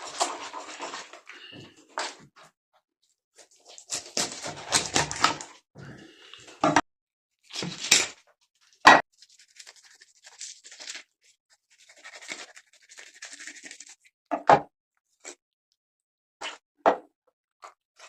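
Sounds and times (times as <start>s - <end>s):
scraping and rustling: 0.0s - 1.3s.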